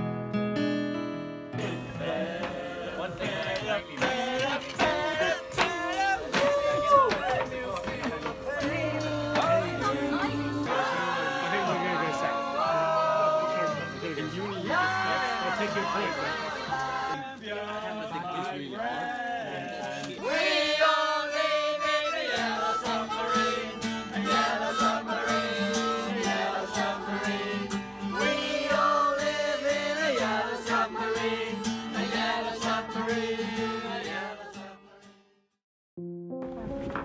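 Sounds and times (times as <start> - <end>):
music with singing over beat: 1.6 - 17.1.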